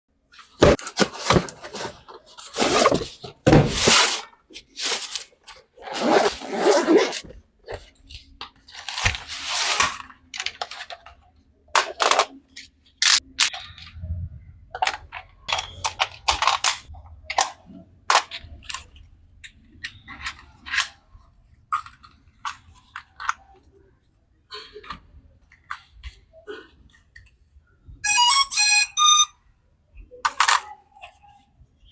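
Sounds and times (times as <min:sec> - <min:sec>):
plastic and cardboard crinkling: 0:00.4 - 0:11.2.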